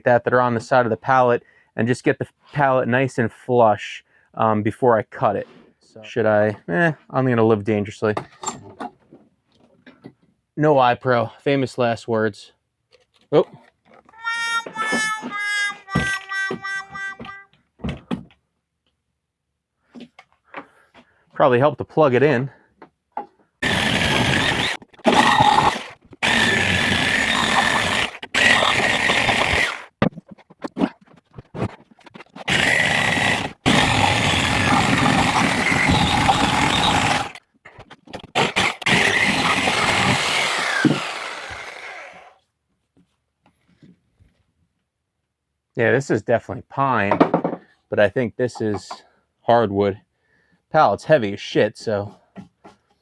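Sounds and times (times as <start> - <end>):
reedy held chords: 14.2 - 17.6
reciprocating saw cutting wood: 23.6 - 29.9, 32.4 - 37.4, 38.2 - 42.4.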